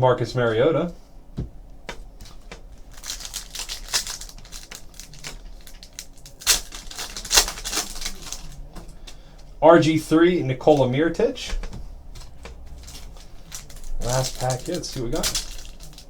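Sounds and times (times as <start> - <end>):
foil wrapper crinkling and tearing: 2.3 - 9.3, 12.2 - 16.0.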